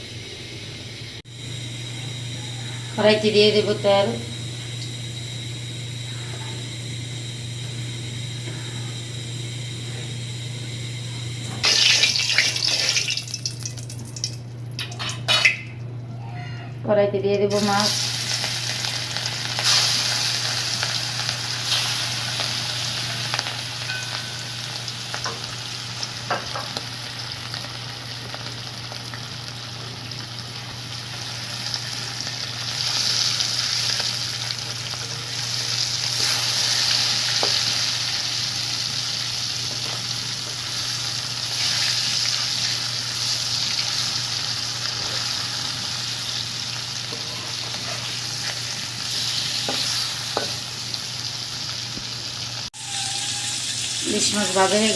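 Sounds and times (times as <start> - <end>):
fish sizzling in hot oil: 11.6 - 14.4, 17.6 - 54.9.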